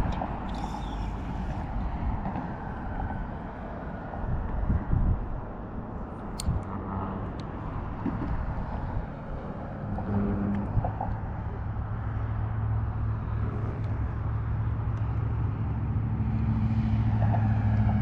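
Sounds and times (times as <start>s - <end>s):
boat motor humming: 8.7s - 15.7s.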